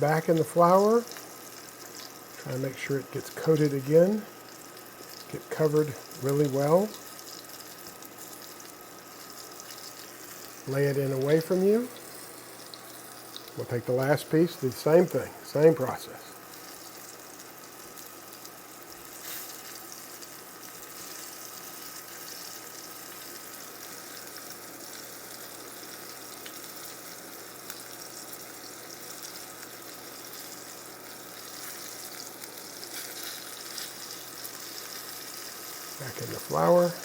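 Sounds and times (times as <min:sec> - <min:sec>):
chicken sizzling in oil: 0:00.0 - 0:37.0.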